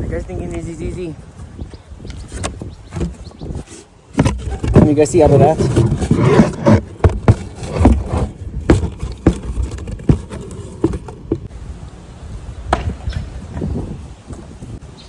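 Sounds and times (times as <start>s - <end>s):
irregular knocks and thumps: 1.2s - 11.5s.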